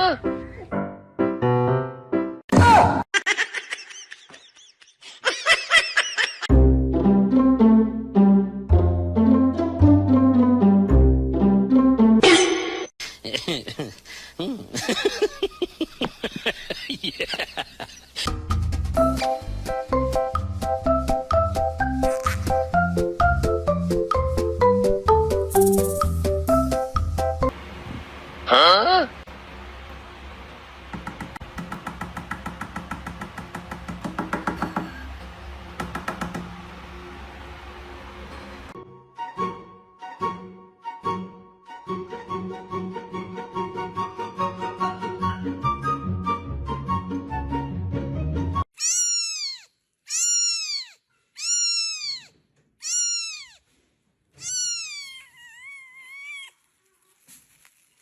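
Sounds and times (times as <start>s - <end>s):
cat meowing loudly: 48.8s - 53.6s, 54.4s - 56.6s.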